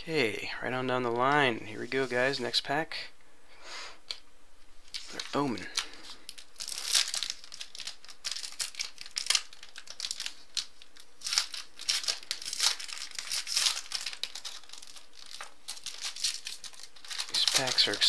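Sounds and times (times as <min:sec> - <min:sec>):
foil wrapper crinkling and tearing: 0:04.8 - 0:18.0.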